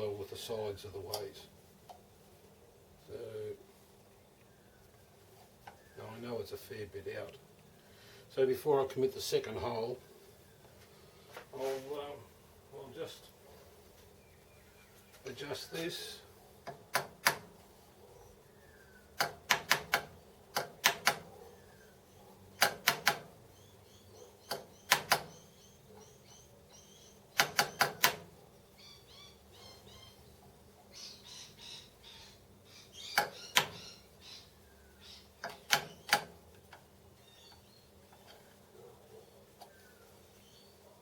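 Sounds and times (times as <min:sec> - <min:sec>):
sharp taps on metal: 0:16.6 - 0:17.6, 0:19.2 - 0:21.3, 0:22.6 - 0:23.4, 0:24.4 - 0:25.4, 0:27.4 - 0:28.3, 0:33.1 - 0:33.8, 0:35.4 - 0:36.9.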